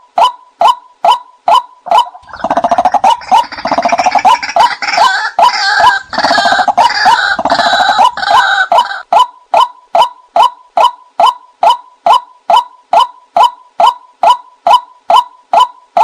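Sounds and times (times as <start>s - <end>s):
bird harsh gurgling chatter: 1.9s - 9.0s.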